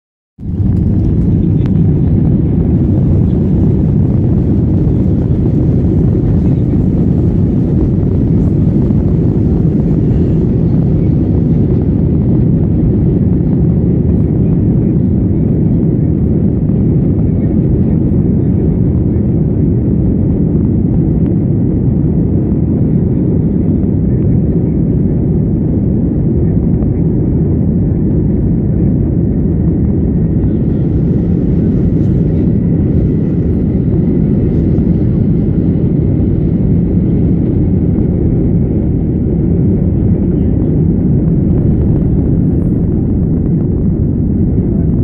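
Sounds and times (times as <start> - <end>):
faint engine whine: 0.4 - 45.0
jet engines rumbling: 0.4 - 45.0.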